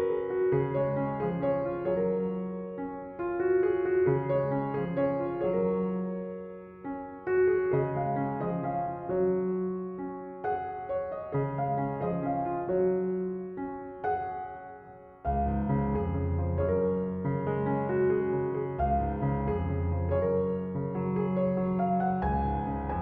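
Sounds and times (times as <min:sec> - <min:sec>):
gentle piano music: 0:00.0 - 0:23.0.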